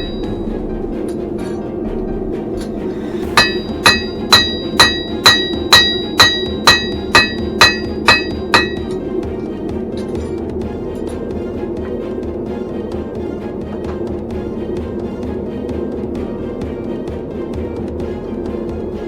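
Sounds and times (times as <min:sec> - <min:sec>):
hammer striking steel on anvil: 0:00.0 - 0:01.7, 0:02.6 - 0:10.4.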